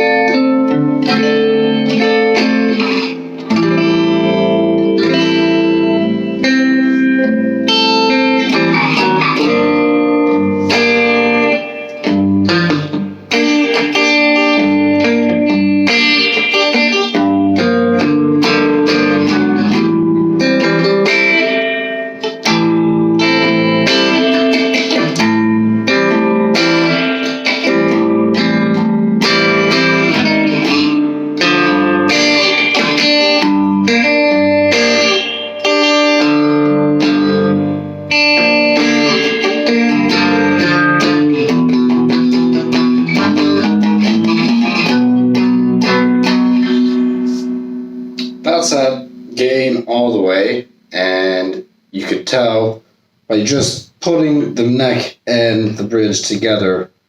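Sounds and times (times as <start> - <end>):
electric guitar chords and notes: 0.0 - 55.0.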